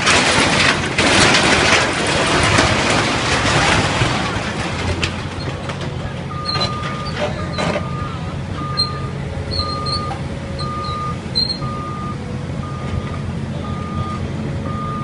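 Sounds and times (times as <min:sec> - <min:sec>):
diesel engine running: 0:00.0 - 0:15.0
reversing alarm beeping: 0:06.3 - 0:15.0.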